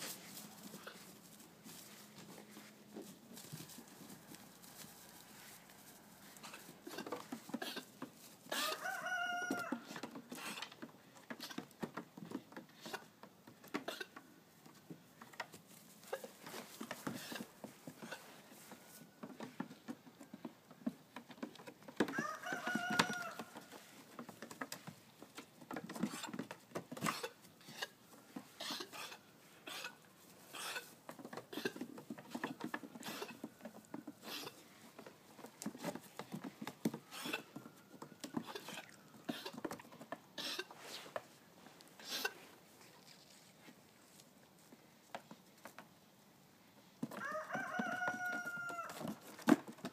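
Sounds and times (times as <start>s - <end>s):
rooster crowing: 8.6s - 9.9s, 22.1s - 23.6s, 47.2s - 49.1s.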